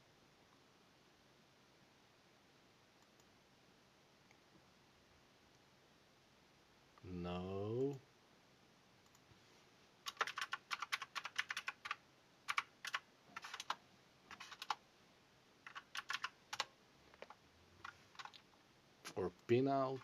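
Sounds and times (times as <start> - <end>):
typing on computer keyboard: 10.1 - 14.8, 15.6 - 18.4.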